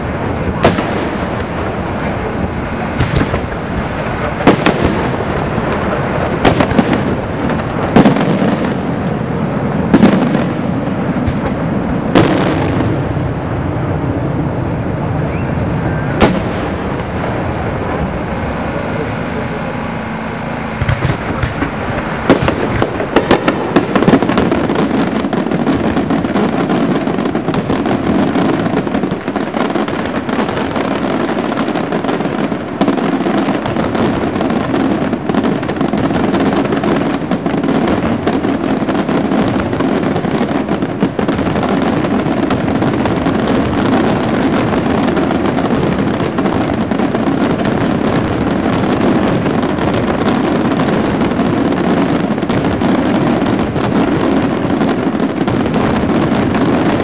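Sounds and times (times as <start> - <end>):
fireworks crackling: 0.0 - 57.0
firework shell bursts: 15.1 - 29.6.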